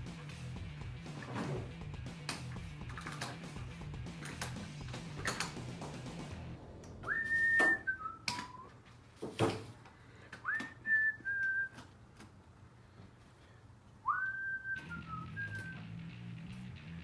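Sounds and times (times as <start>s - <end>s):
person whistling: 7.0s - 8.8s, 10.4s - 11.8s, 14.0s - 15.9s.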